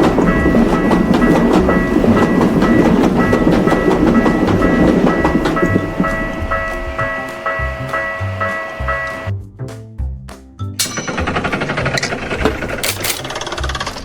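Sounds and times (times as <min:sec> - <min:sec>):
train wheels rumbling and clacking: 0:00.0 - 0:07.1, 0:10.8 - 0:13.7
background music: 0:00.0 - 0:13.4.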